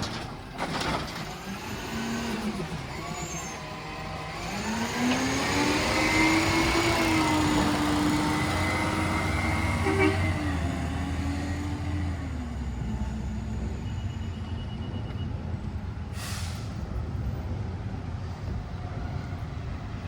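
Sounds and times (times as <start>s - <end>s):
truck engine droning: 0.0s - 20.0s
air brakes hissing: 16.1s - 17.0s.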